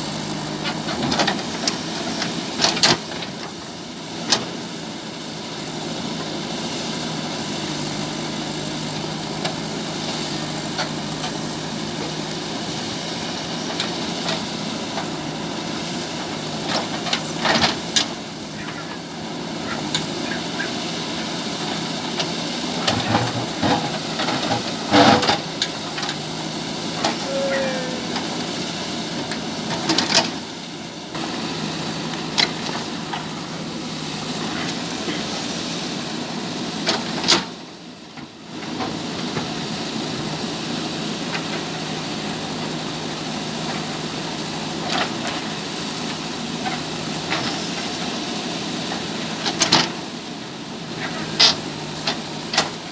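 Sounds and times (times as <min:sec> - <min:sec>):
diesel engine running: 0:00.0 - 0:52.9
digger knocks and clanks: 0:00.5 - 0:03.6, 0:13.4 - 0:27.2, 0:29.1 - 0:30.4, 0:31.2 - 0:33.6, 0:46.5 - 0:48.2, 0:48.8 - 0:50.1, 0:50.9 - 0:52.9.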